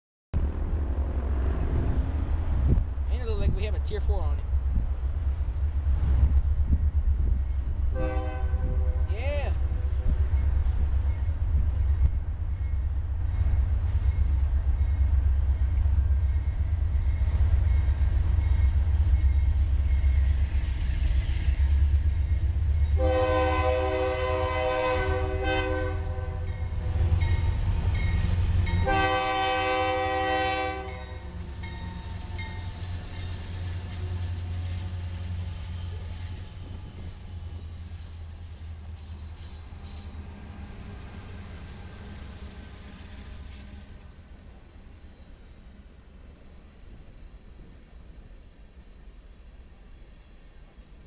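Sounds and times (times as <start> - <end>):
locomotive engines rumbling: 0.4 - 45.6
locomotive air horn blasts: 7.9 - 9.2, 23.0 - 26.6, 28.6 - 31.3.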